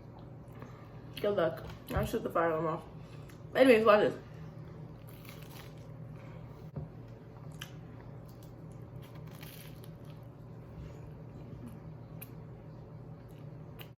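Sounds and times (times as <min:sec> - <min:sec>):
steady low hum: 0:00.0 - 0:13.9
person chewing toast: 0:05.0 - 0:06.0, 0:07.4 - 0:10.3.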